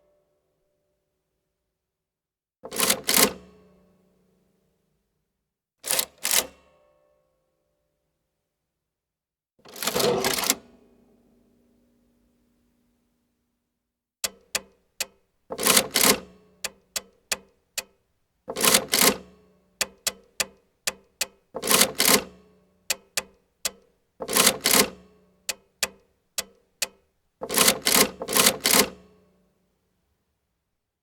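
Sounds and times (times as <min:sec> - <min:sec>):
adding machine key clicks: 0:14.2 - 0:17.9.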